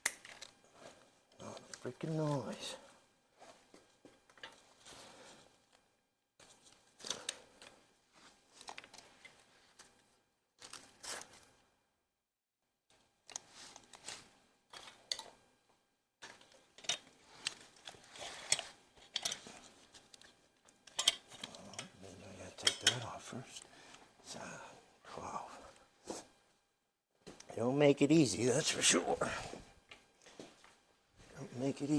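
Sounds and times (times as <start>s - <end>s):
hand tools clicking and clinking: 16.2s - 23.2s.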